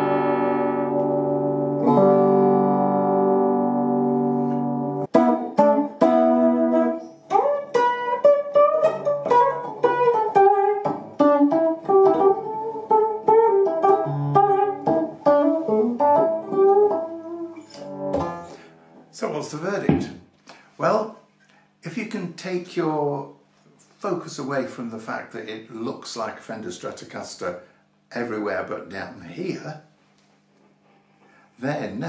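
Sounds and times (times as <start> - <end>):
electric guitar chord: 0.0 - 19.1
picked guitar melody lines: 0.0 - 19.8.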